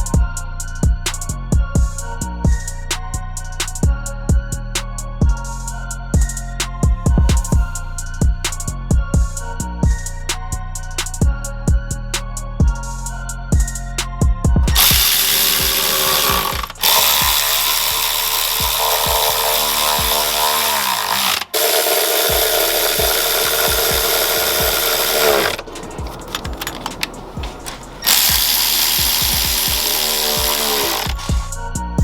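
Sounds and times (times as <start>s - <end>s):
music with steady beat: 0.0s - 32.0s
power tool running: 14.7s - 31.6s
rapid clicking: 14.7s - 31.6s.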